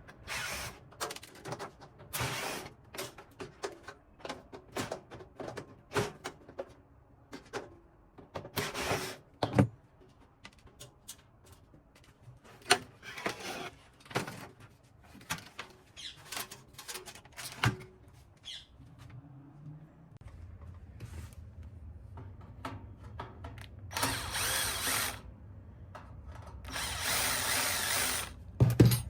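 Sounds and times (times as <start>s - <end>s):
clicks and knocks of parts: 0.8s - 2.2s, 2.8s - 8.6s, 14.0s - 18.0s.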